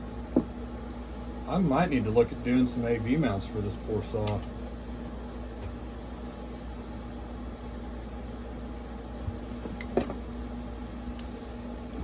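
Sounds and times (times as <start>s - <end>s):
fan hum: 0.0s - 12.0s.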